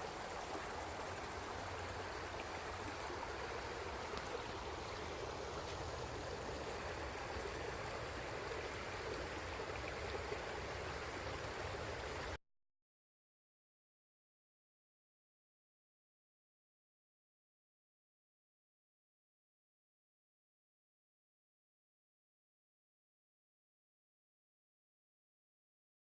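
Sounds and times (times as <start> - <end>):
river rushing: 0.0 - 12.4.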